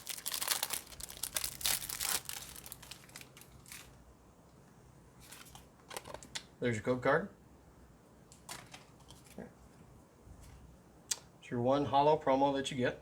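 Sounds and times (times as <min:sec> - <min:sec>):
plastic wrapper tearing and crinkling: 0:00.0 - 0:04.0.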